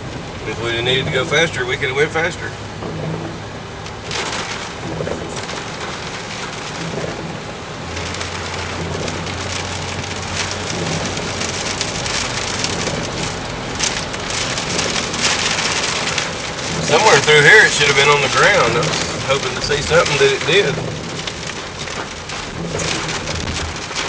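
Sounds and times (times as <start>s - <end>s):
low engine hum: 0.0s - 24.0s
rushing noise inside moving vehicle: 0.0s - 24.0s.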